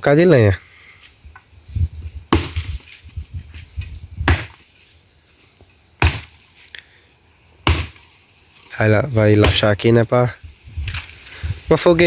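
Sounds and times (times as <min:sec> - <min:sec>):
axe splitting firewood: 0:02.3 - 0:02.9, 0:04.2 - 0:04.7, 0:06.0 - 0:06.5, 0:07.6 - 0:08.1, 0:09.4 - 0:09.7.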